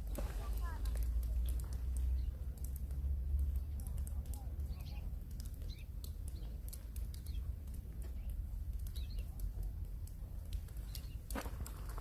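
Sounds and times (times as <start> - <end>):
small birds chirping: 0.0 - 12.0
faint ticks: 0.1 - 12.0.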